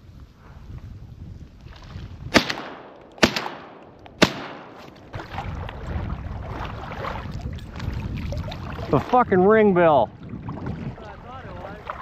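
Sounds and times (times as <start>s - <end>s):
wind noise: 0.0s - 3.3s, 3.9s - 12.0s
shotgun shots with echo: 2.3s - 4.9s.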